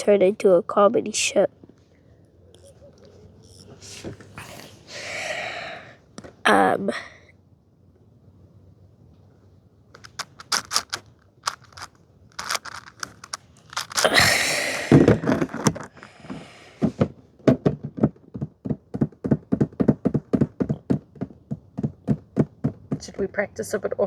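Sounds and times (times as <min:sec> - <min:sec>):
scraping rustle: 0:10.0 - 0:14.3
puzzle cube clicking: 0:10.0 - 0:14.4.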